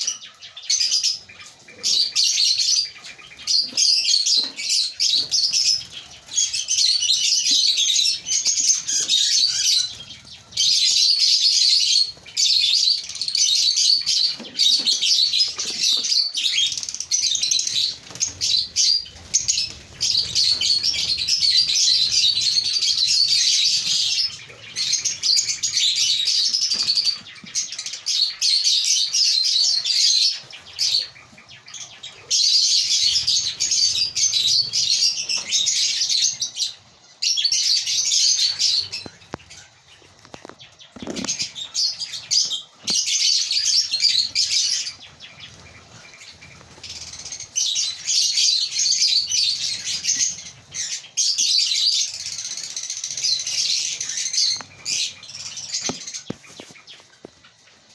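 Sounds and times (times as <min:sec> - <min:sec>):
lovebirds chattering: 0:00.0 - 0:57.9.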